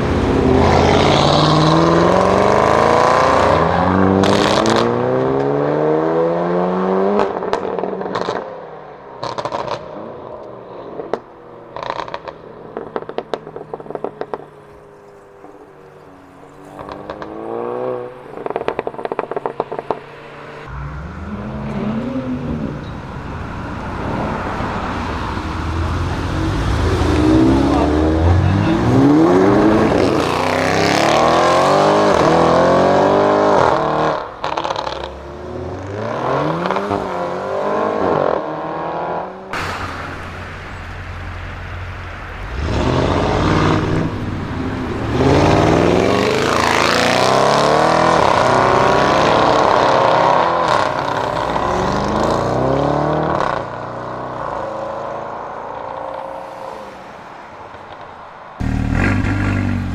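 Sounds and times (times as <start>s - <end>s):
car engine accelerating hard: 0.0s - 8.4s, 16.8s - 54.9s, 58.6s - 59.9s
sharp exhaust crack: 39.6s - 47.3s, 58.6s - 59.9s.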